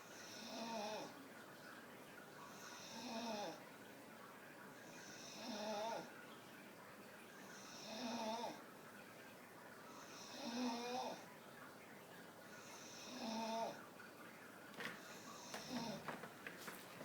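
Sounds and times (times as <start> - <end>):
dog snoring: 5.0 - 6.1, 7.6 - 8.6, 12.8 - 13.8, 15.0 - 16.2.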